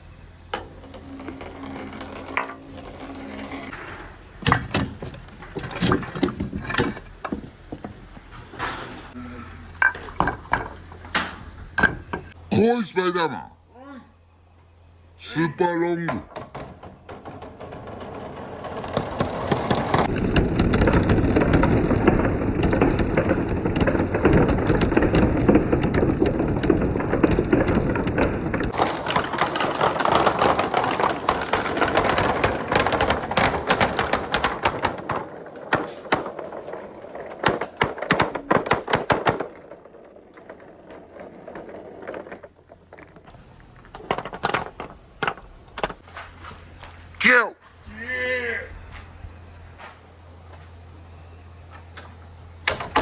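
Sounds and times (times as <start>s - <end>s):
marbles clattering down a track: 0.7s - 3.7s, 16.3s - 43.3s.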